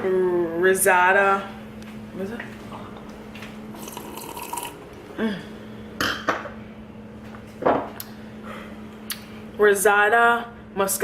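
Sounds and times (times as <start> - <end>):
mouth sipping sounds: 3.8 - 5.5.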